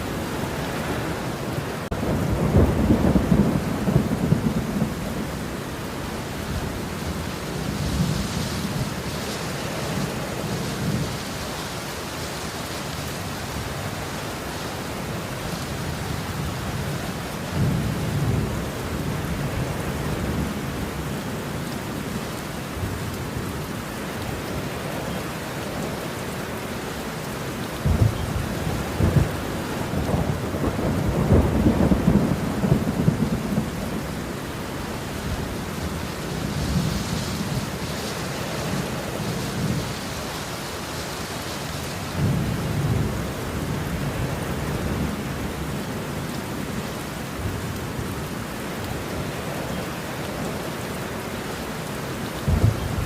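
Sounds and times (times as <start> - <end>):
heavy rain: 0.0 - 53.0
rolling thunder: 1.8 - 5.5, 27.8 - 34.3, 52.4 - 53.0.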